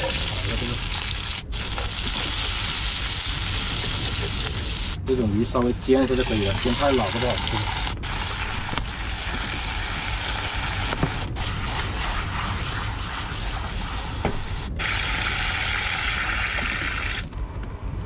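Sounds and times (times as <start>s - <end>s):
fish sizzling in hot oil: 0.0s - 5.0s, 6.1s - 13.9s.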